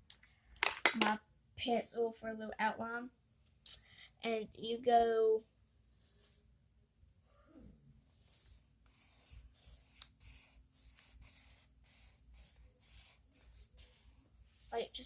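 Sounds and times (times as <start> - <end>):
pencil scratching on paper: 7.2 - 15.0.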